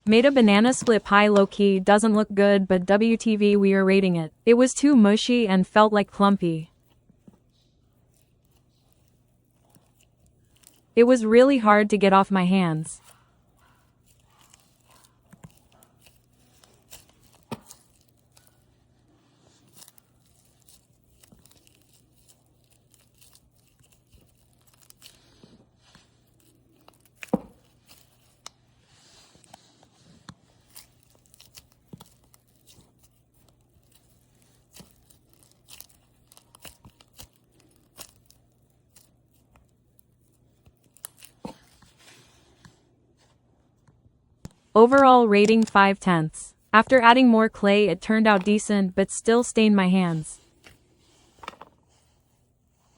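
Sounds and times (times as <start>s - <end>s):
slime crackling and tearing: 8.0s - 11.0s, 13.8s - 18.8s, 19.4s - 28.5s, 30.4s - 41.8s.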